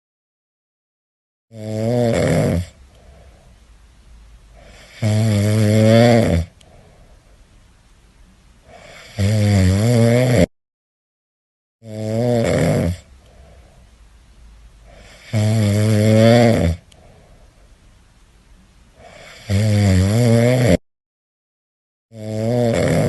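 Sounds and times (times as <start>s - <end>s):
cat snoring: 1.5s - 3.3s, 4.6s - 6.8s, 8.6s - 10.5s, 11.8s - 13.7s, 14.8s - 17.3s, 19.0s - 20.8s, 22.1s - 23.0s
faint breathing: 2.8s - 3.8s, 4.4s - 5.2s, 6.6s - 7.6s, 8.6s - 9.2s, 13.1s - 14.2s, 14.8s - 15.6s, 16.9s - 17.9s, 18.9s - 19.5s.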